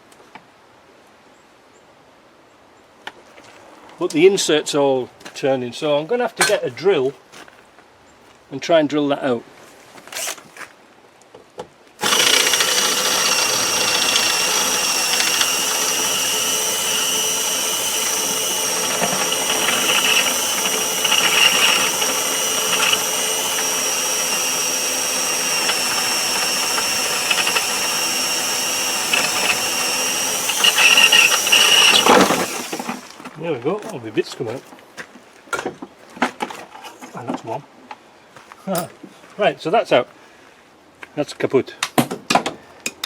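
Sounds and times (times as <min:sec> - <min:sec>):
electric drill drilling: 0:12.0 - 0:33.2.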